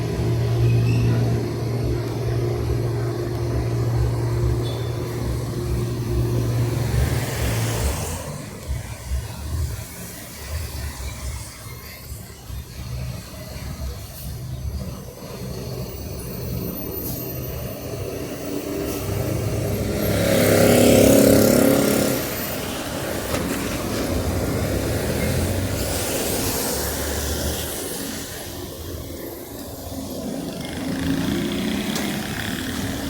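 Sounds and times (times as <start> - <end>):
traffic rumble: 0.0 - 33.0
vehicle passing close by: 18.7 - 28.8.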